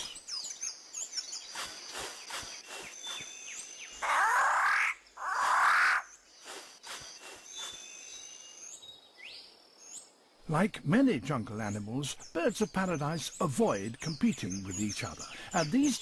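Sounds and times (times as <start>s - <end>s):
forest insects chirping: 0.0s - 16.0s
bird harsh rustling calls: 1.0s - 8.4s.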